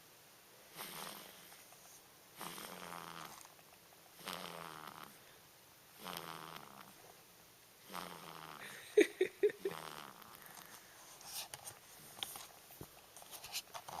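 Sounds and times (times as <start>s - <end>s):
baby snoring: 0.7s - 1.6s, 2.4s - 3.5s, 4.2s - 5.3s, 5.9s - 7.0s, 7.8s - 8.8s, 9.6s - 10.6s.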